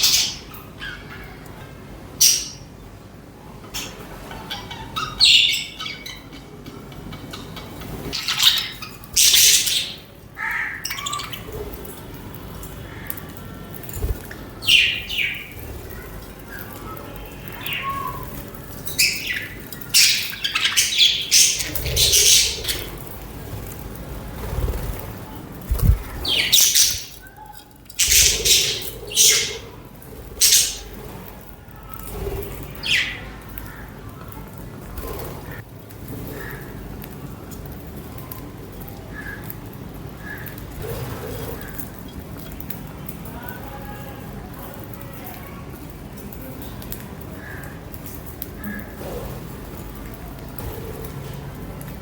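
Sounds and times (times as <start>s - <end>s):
budgerigars chirping and chattering: 0.0s - 1.6s, 2.2s - 2.7s, 3.7s - 25.1s, 25.7s - 31.1s, 32.1s - 35.6s.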